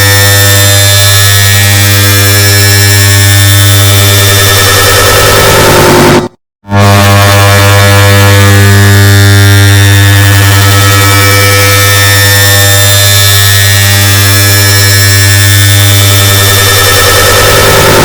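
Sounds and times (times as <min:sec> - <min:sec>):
distorted air conditioner drone: 0:06.8 - 0:18.0.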